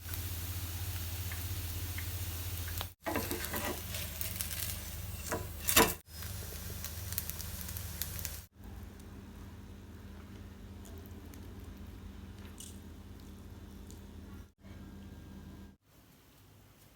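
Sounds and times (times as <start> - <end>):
pancake sizzling in oil: 0.0 - 8.5.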